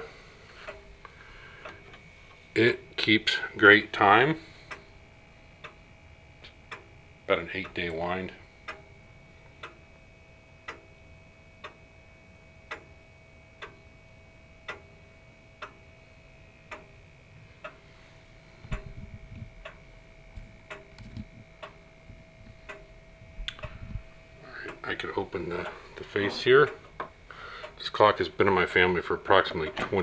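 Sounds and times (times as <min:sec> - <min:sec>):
faint steady hum: 0:00.0 - 0:30.0
grandfather clock ticking: 0:00.6 - 0:04.9, 0:05.6 - 0:12.0, 0:12.6 - 0:13.9, 0:14.6 - 0:15.9, 0:16.6 - 0:17.8, 0:18.7 - 0:30.0
low thumps and rumbling: 0:18.6 - 0:24.4.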